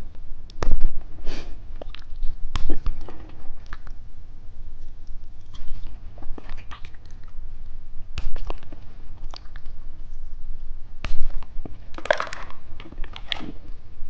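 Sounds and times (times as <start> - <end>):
gummy candy being chewed: 1.7 - 4.0, 4.8 - 7.4, 8.2 - 9.8, 11.0 - 13.7.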